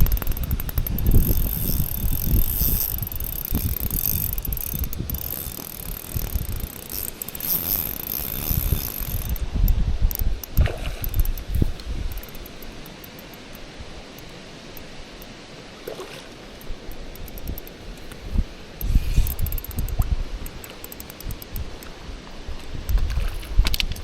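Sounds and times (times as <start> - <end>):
wind buffeting microphone: 0.0 - 12.7
fishing reel gears whirring: 0.0 - 13.6, 16.6 - 21.9.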